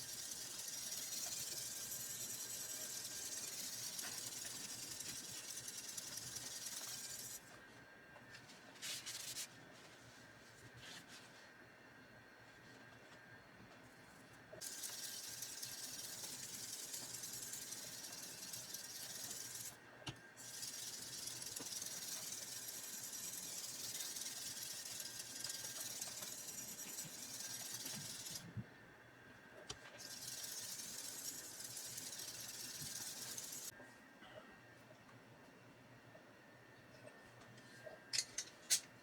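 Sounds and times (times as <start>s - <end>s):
knife grinding on abrasive: 0.0s - 7.4s, 14.6s - 19.7s, 20.4s - 28.4s, 30.0s - 33.7s.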